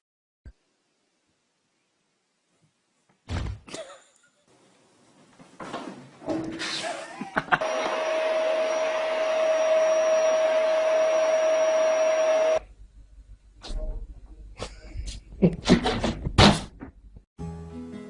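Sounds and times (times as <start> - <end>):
electric appliance humming: 7.5 - 12.7.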